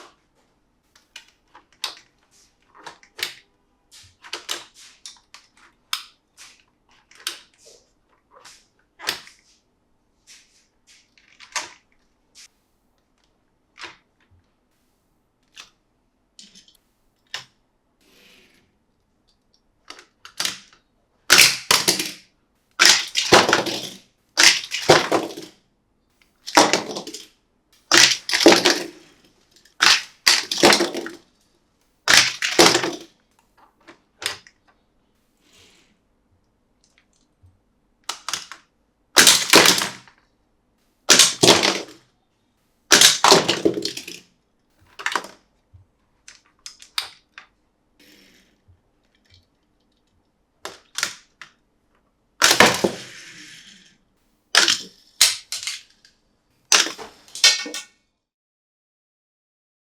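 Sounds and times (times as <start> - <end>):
plastic toy parts clicking: 1.0 - 2.1, 19.3 - 25.5, 27.9 - 31.2, 32.1 - 33.0, 38.0 - 40.2, 41.1 - 42.0, 42.9 - 44.3, 46.2 - 47.5, 49.2 - 51.6, 52.4 - 53.3, 54.6 - 56.1, 56.7 - 57.9.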